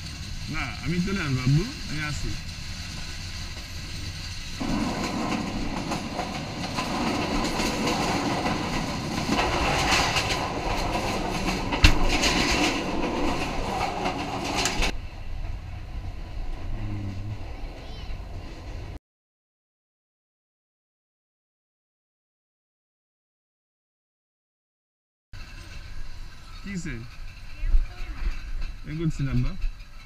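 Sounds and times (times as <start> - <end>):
train wheels clattering on rails: 0.0 - 16.7, 25.4 - 30.0.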